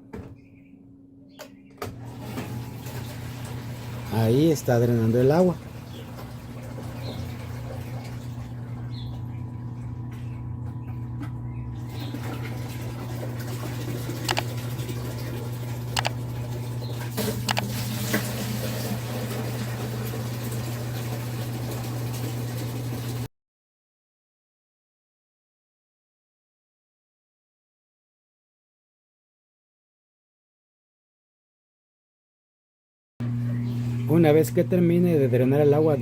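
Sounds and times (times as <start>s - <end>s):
washing machine pump hum: 1.8s - 23.3s, 33.2s - 36.0s
sharp clicks: 14.3s - 14.5s.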